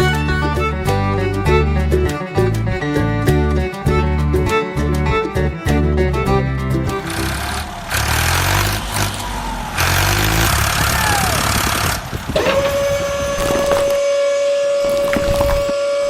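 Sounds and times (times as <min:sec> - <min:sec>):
vehicle engine rumbling: 0:00.0 - 0:14.1.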